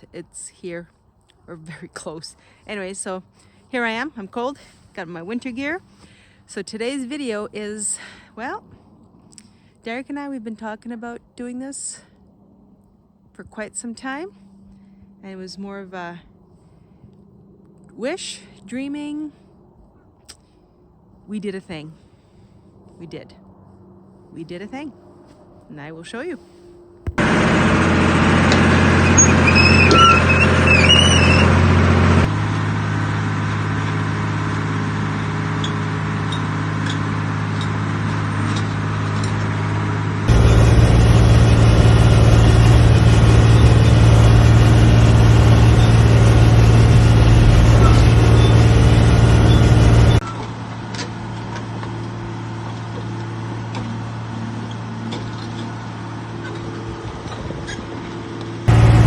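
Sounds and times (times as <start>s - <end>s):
excavator diesel engine idling: 27.1s - 55.1s, 58.7s - 59.0s.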